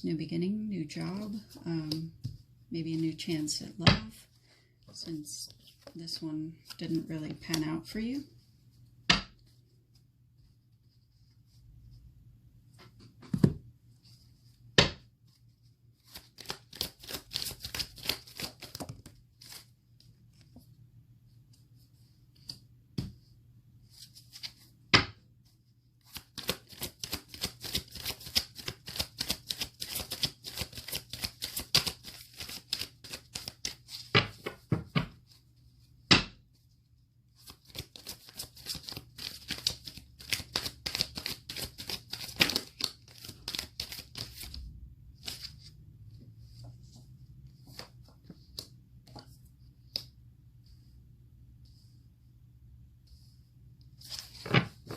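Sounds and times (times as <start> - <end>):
cards being shuffled: 16.0 - 19.7, 26.0 - 34.6, 37.4 - 44.5, 45.2 - 45.6, 54.0 - 54.9.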